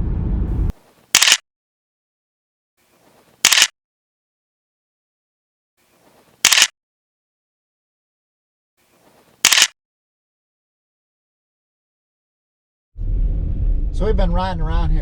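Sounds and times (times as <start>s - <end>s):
camera shutter clicks: 1.2s - 1.4s, 3.4s - 3.7s, 6.4s - 6.7s, 9.4s - 9.8s.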